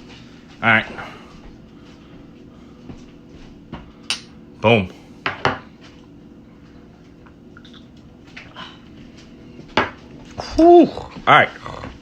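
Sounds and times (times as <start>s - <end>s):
man exclaiming: 10.4s - 12.0s.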